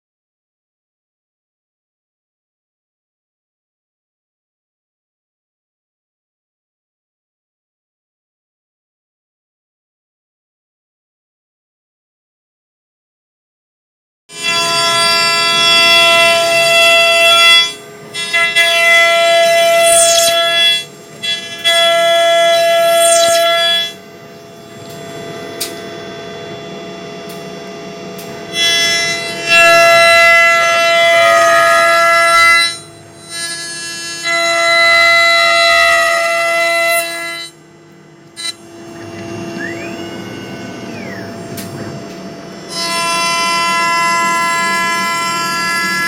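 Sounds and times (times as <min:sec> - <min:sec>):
cnc router motors whining: 0:14.3 - 0:46.0.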